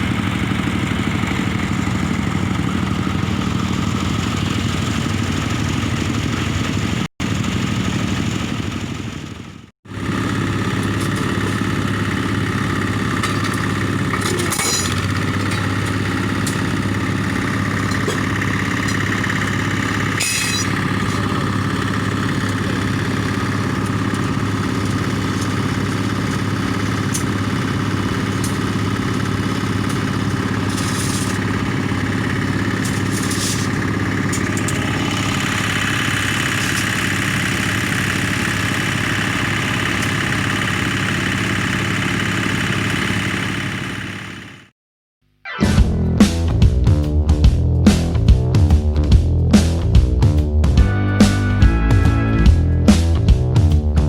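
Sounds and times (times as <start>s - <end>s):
diesel engine running: 0.0s - 44.7s, 45.8s - 54.0s.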